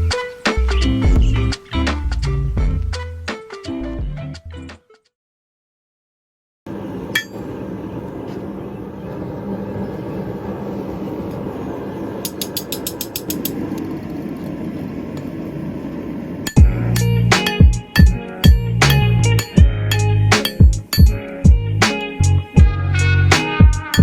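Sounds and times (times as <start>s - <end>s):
music: 0.0s - 5.2s, 16.5s - 24.0s.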